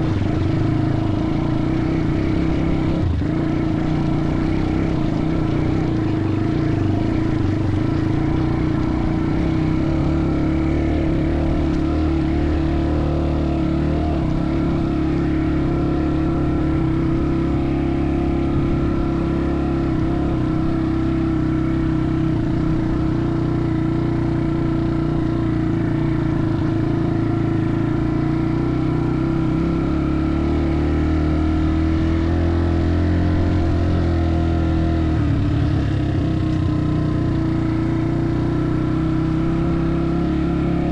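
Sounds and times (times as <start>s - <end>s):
engine running: 0.0s - 40.9s.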